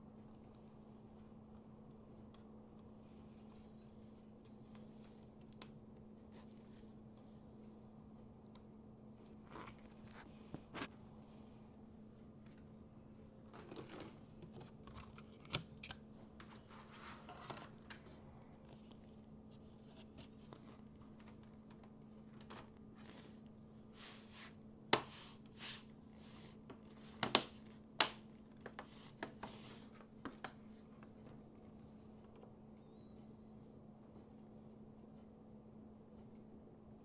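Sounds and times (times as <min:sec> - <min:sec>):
steady low hum: 0:00.0 - 0:37.0
small sharp clicks and snaps: 0:04.7 - 0:05.8.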